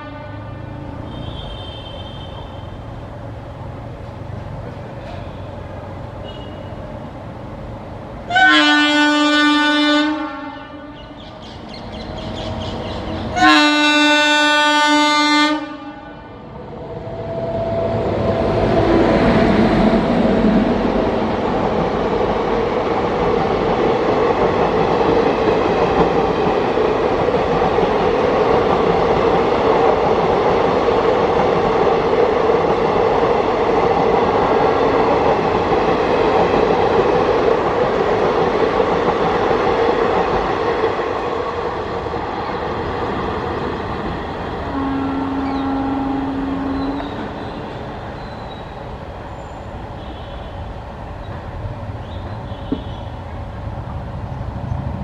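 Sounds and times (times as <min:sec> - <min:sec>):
train horn blast: 0:00.0 - 0:02.9, 0:06.2 - 0:06.8, 0:08.3 - 0:11.0, 0:13.3 - 0:16.4, 0:44.7 - 0:47.7, 0:50.0 - 0:50.7, 0:52.5 - 0:53.1
train wheels rushing on rail: 0:00.0 - 0:55.0.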